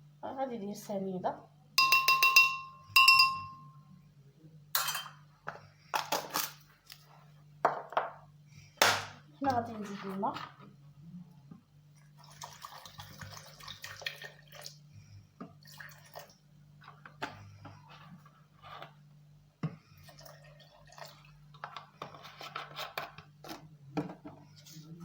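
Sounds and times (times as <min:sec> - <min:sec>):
clinks and knocks of handling: 0:01.8 - 0:03.7
water pouring and splashing: 0:12.2 - 0:14.8, 0:15.6 - 0:16.4, 0:20.0 - 0:21.3.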